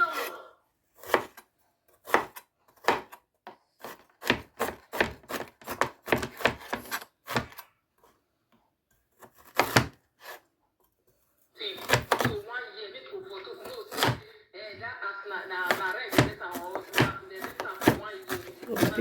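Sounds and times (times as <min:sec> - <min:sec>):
knife chopping on cutting board: 0:01.0 - 0:01.4, 0:02.0 - 0:03.2, 0:03.8 - 0:07.6, 0:09.2 - 0:10.4, 0:11.8 - 0:12.4, 0:13.9 - 0:14.2, 0:15.6 - 0:19.0.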